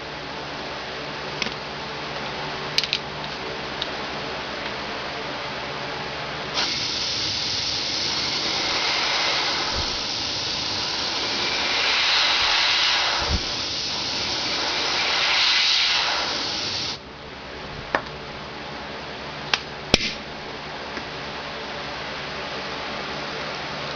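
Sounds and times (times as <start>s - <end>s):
air blow gun hissing: 6.6s - 17.0s.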